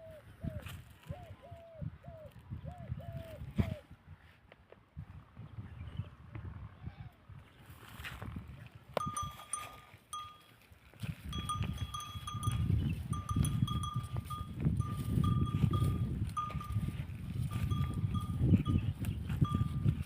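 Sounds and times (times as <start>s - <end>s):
cowbell clanking: 9.0s - 10.6s, 11.3s - 20.0s.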